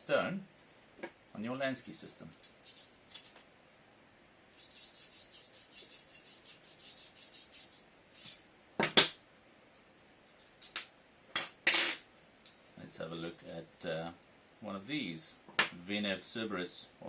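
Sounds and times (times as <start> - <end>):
sharpening stone rasping on knife: 4.6 - 8.4
sharp knocks of hard parts: 8.8 - 9.2.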